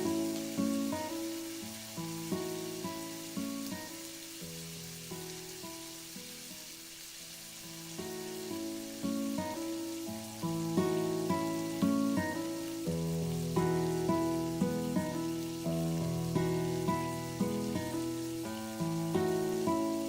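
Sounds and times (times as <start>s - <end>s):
steady soft hiss: 0.0s - 20.0s
gentle plucked melody: 8.1s - 20.0s.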